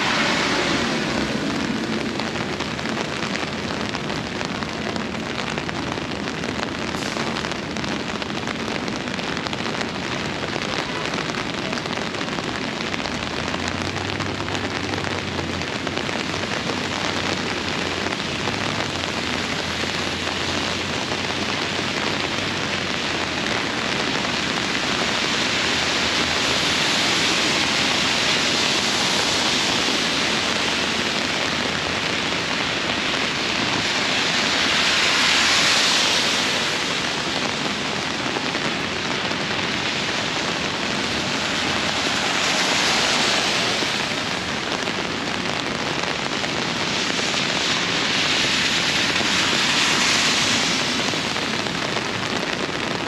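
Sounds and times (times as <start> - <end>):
heavy rain falling: 0.0 - 53.0.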